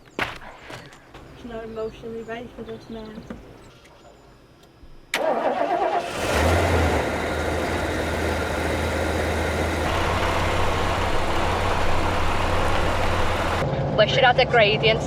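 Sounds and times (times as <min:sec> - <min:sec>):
engine starter cranking: 0:05.1 - 0:13.6
van engine revving and idling: 0:06.0 - 0:13.6.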